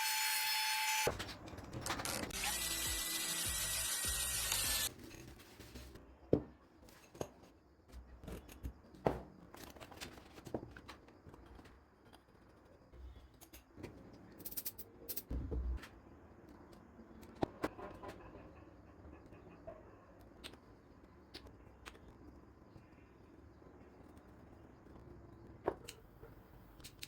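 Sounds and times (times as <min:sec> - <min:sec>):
power tool whining: 0:02.3 - 0:04.9.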